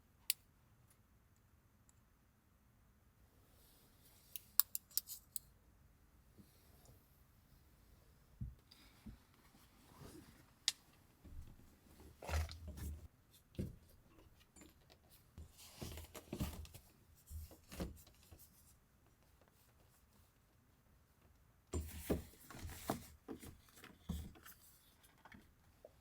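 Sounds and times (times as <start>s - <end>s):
handling knocks and rustles: 11.2s - 18.6s, 21.7s - 26.0s.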